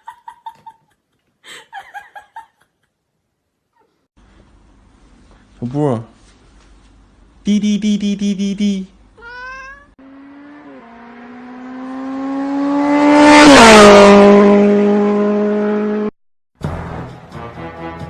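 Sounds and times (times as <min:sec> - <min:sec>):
car passing by: 0:10.0 - 0:16.1.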